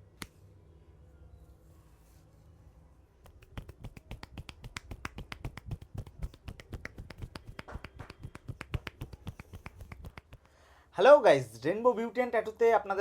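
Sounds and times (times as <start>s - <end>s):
hands cracking hair and scalp: 3.2s - 10.6s.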